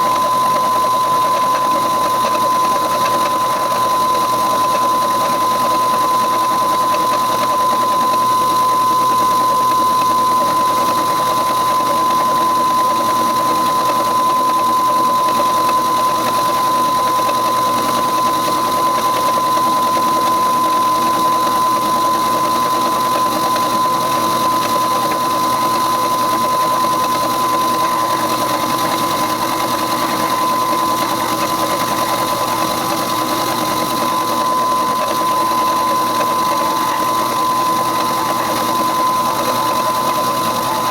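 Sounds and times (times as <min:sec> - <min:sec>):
milling saw cutting steel: 0:19.6 - 0:40.9.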